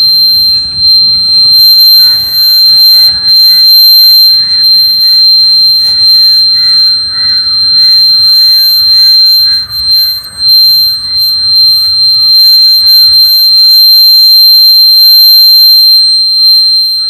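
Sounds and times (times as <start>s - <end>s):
high-pitched buzzer tone: 0.0s - 17.0s.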